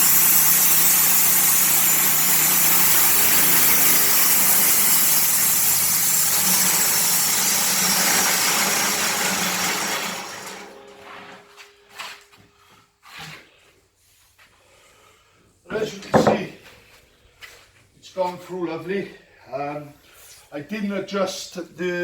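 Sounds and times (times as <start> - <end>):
blade cutting through timber: 0.0 - 10.6
sawmill engine running: 0.0 - 12.0
short knocks: 16.0 - 16.6.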